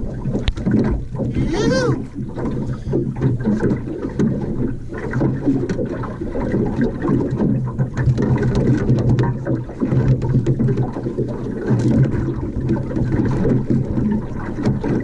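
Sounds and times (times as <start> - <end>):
water noise: 0.0 - 15.0
boat motor running: 0.7 - 8.0.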